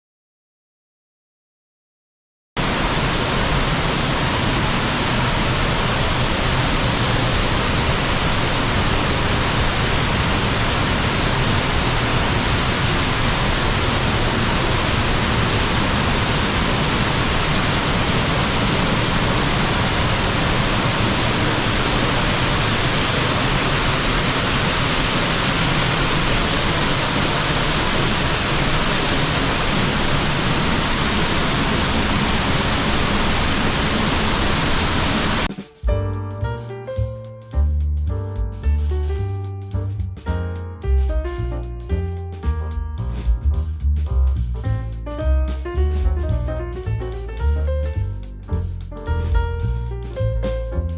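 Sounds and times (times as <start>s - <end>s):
waterfall roaring: 2.6s - 35.5s.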